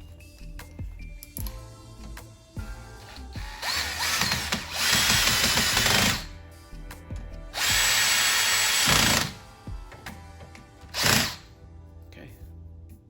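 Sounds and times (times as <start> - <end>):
power drill driving bolts: 3.0 - 6.3, 7.6 - 9.4, 10.9 - 11.5.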